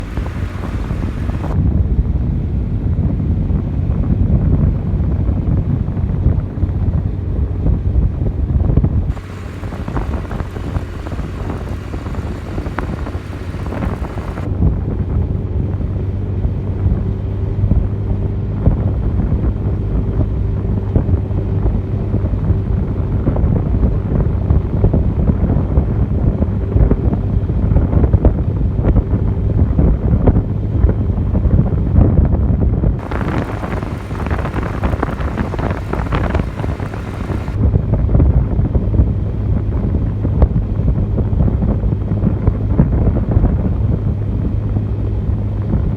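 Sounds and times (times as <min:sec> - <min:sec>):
steady low hum: 0:00.0 - 0:03.1, 0:08.9 - 0:19.0, 0:32.9 - 0:41.0
wind buffeting microphone: 0:00.0 - 0:45.9.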